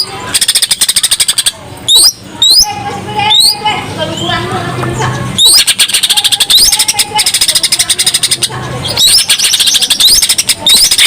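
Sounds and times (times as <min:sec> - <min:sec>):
bird singing: 0:00.0 - 0:11.0.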